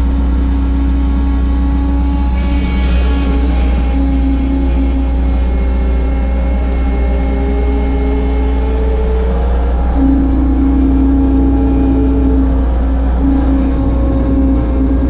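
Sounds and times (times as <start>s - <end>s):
machine whine: 0.0s - 15.0s
skid steer engine hum: 0.0s - 15.0s.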